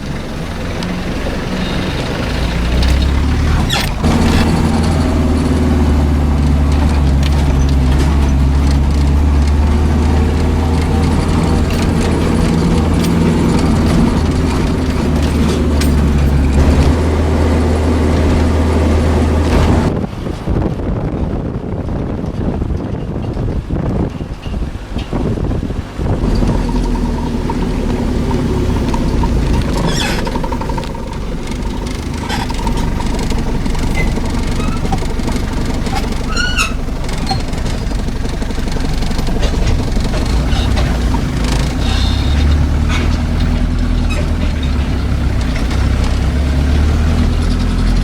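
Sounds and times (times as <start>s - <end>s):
engine squeal: 0.0s - 20.0s, 24.2s - 48.0s
vehicle engine running: 0.0s - 22.6s, 24.8s - 48.0s.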